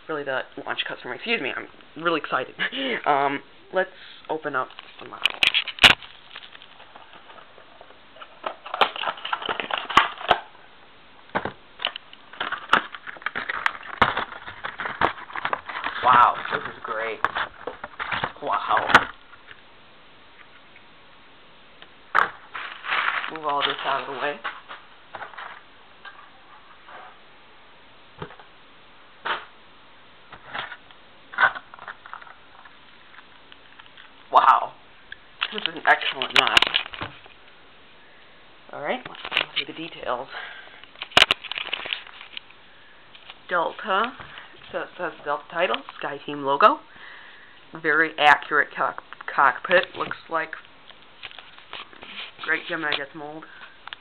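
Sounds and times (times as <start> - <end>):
plastic packaging crinkling: 4.7 - 10.5, 11.8 - 19.6, 22.1 - 26.2, 35.4 - 37.4, 39.1 - 40.0, 40.8 - 46.7
packing material clicks and knocks: 8.2 - 10.5, 11.3 - 19.2, 35.4 - 37.3, 40.8 - 42.5
faint rustling: 22.2 - 27.3, 49.1 - 54.0.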